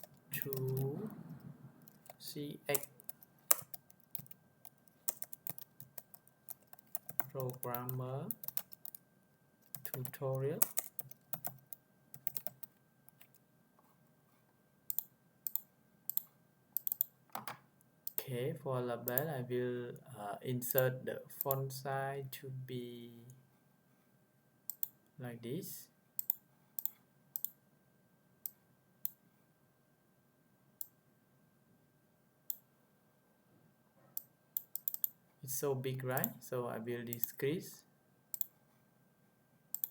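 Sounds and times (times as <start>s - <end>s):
computer keyboard typing: 0.0s - 0.9s, 1.8s - 9.0s, 9.6s - 13.4s, 14.9s - 18.2s, 34.6s - 35.1s, 38.3s - 38.5s.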